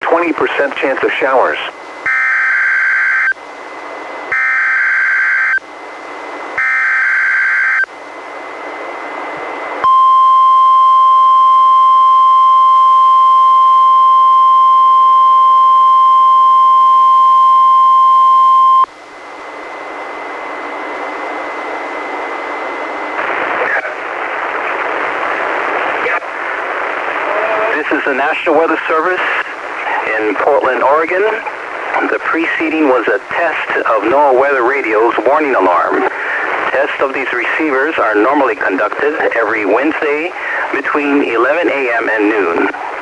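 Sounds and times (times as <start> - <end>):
radio hiss: 0.0 - 4.2, 22.6 - 43.0
steady warning alarm tone: 2.0 - 3.4, 4.3 - 7.9, 9.8 - 18.9.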